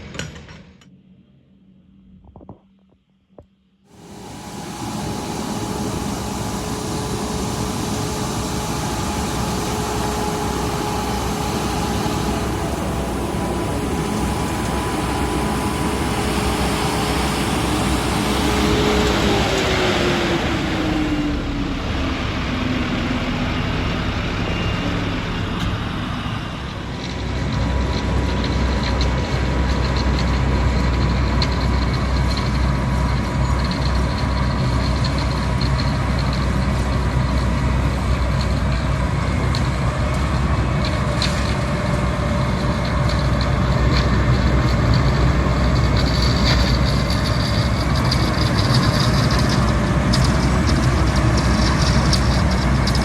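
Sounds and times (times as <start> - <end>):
deep loud rumble: 3.9 - 34.9
heavy diesel machinery droning: 3.9 - 53.0.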